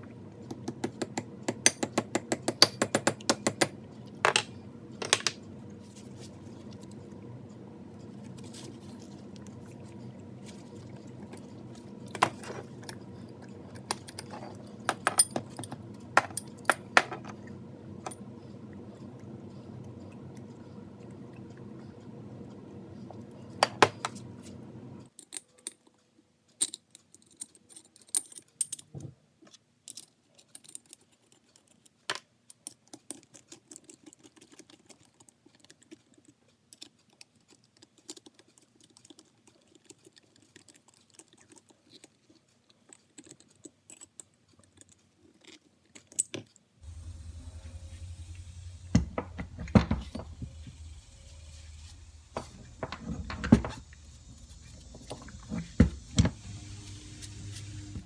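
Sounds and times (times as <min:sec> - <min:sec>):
steady hum: 0:00.0 - 0:25.1, 0:46.8 - 0:58.0
small metal parts clinking: 0:13.8 - 0:17.3.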